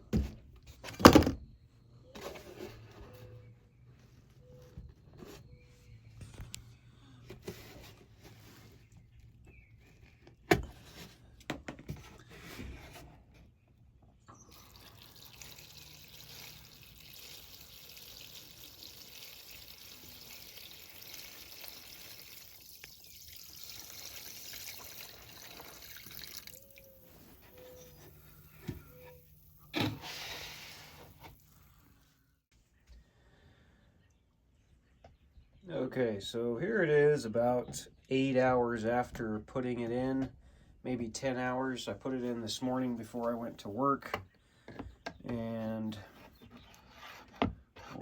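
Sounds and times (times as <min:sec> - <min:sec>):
liquid pouring into a container: 0:14.4 - 0:32.1.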